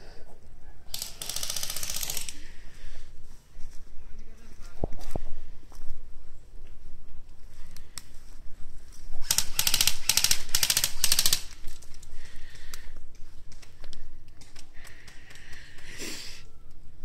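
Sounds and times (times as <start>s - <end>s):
airsoft gun automatic bursts: 0.9s - 2.4s, 9.2s - 11.8s.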